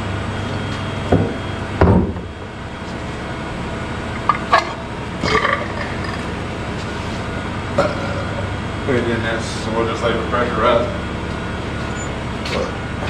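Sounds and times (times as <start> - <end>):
engine running: 0.0 - 13.0
short knocks and clunks: 1.1 - 2.3.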